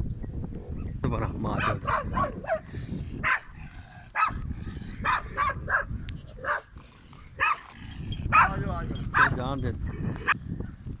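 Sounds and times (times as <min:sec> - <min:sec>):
dog barking: 0:01.6 - 0:03.5, 0:04.1 - 0:04.4, 0:05.0 - 0:06.7, 0:07.4 - 0:07.7, 0:08.3 - 0:09.4.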